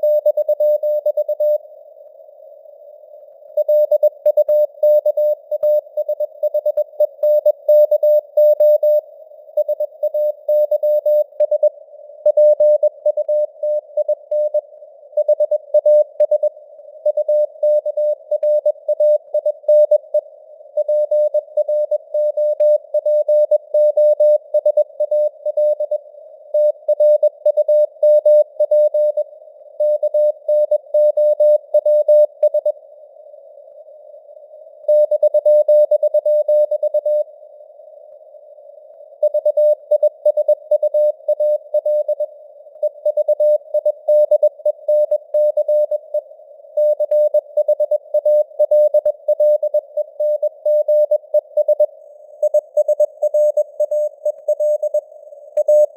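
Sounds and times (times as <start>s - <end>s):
morse code beeps: 3.6s - 9.0s, 9.6s - 11.7s, 39.2s - 46.2s, 46.8s - 55.9s
receiver hiss: 31.6s - 55.9s.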